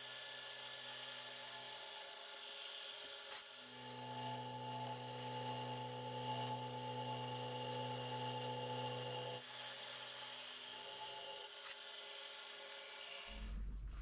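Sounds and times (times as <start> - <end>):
milling machine motor humming: 4.3 - 9.4.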